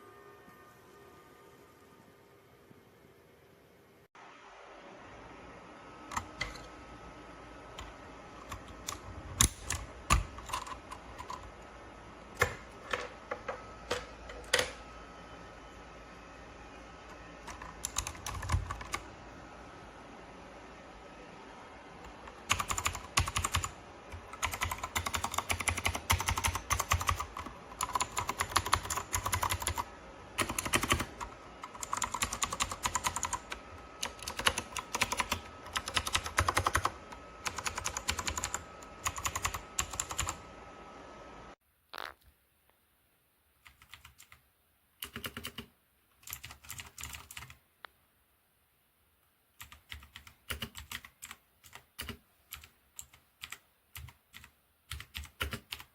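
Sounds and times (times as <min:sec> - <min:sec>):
typing on mechanical keyboard: 0:08.4 - 0:11.5, 0:17.4 - 0:19.0, 0:22.4 - 0:40.4, 0:43.6 - 0:44.4, 0:45.0 - 0:47.6, 0:49.6 - 0:55.9.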